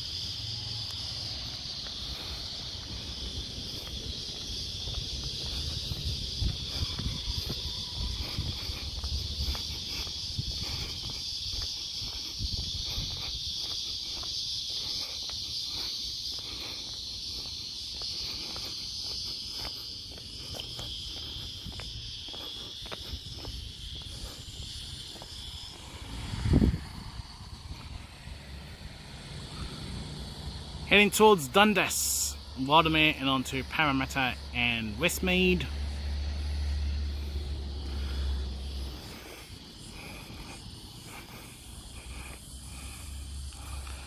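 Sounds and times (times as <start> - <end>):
insects droning: 0.0 - 44.0
footsteps: 0.9 - 28.2
wind rumble on microphone: 3.4 - 13.5, 23.0 - 30.3.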